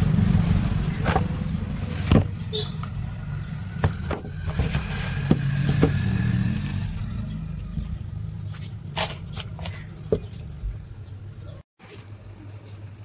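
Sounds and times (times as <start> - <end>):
electric fan motor humming: 0.0 - 11.4
handling clicks and knocks: 1.0 - 11.6.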